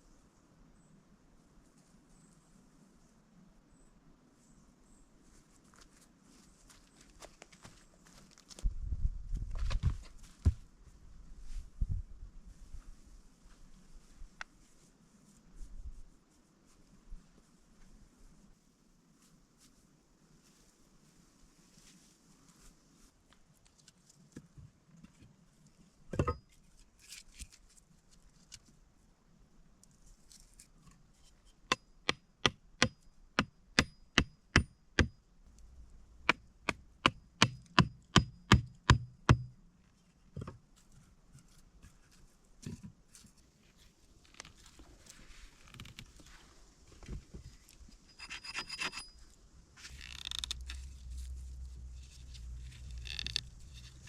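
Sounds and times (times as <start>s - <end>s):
rustling: 12.5s - 28.8s, 39.8s - 54.0s.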